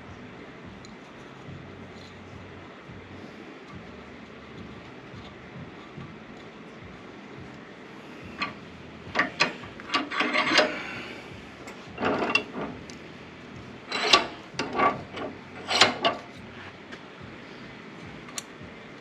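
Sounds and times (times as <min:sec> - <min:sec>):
hand tools clicking and scraping: 0:07.4 - 0:17.1.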